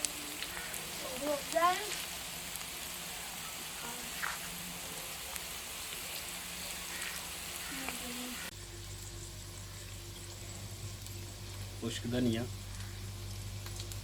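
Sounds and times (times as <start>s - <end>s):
chicken sizzling in hot oil: 0.0s - 14.0s
low hum: 8.4s - 14.0s.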